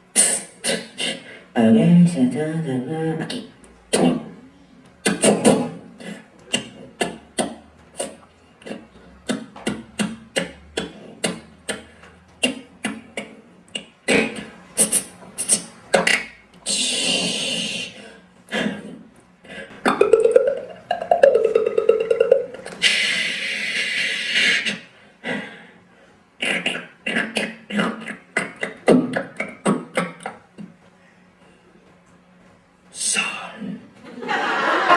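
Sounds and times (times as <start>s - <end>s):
man beatboxing clicks and pops: 0.1s - 1.3s, 3.3s - 18.0s, 18.6s - 24.9s, 26.4s - 30.9s
wavering voiced sound: 19.7s - 23.8s.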